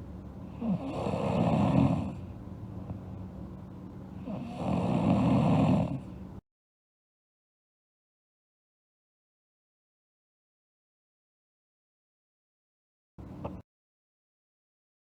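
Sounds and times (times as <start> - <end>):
steady low hum: 0.0 - 6.4, 13.2 - 13.6
girl snoring: 0.5 - 2.2, 4.2 - 6.1.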